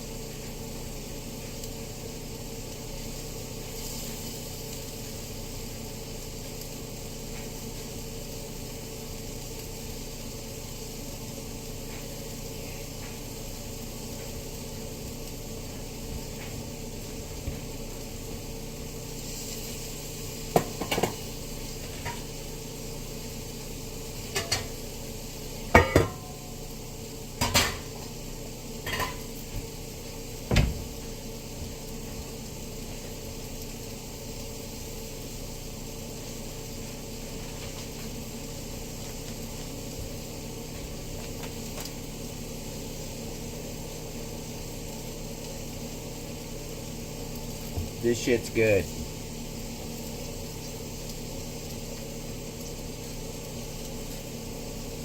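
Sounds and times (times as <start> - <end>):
steady background hum: 0.0 - 55.0
cookware and utensils clattering: 24.3 - 24.7, 25.8 - 26.4, 27.4 - 28.0, 28.9 - 29.3.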